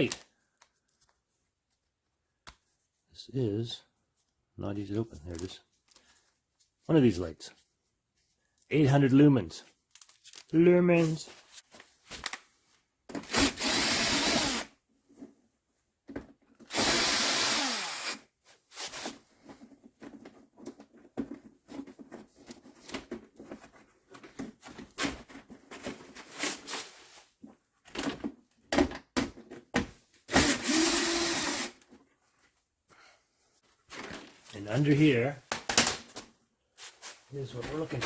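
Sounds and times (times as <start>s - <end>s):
power drill-driver running: 13.3s - 14.7s, 16.7s - 18.3s, 30.3s - 31.8s.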